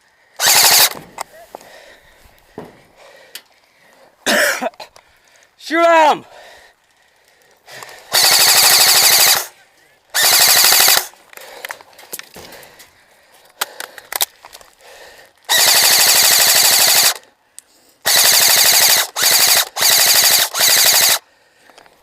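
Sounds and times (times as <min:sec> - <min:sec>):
airsoft gun full-auto bursts: 0:00.4 - 0:01.0, 0:08.1 - 0:11.2, 0:15.5 - 0:17.2, 0:18.0 - 0:21.2.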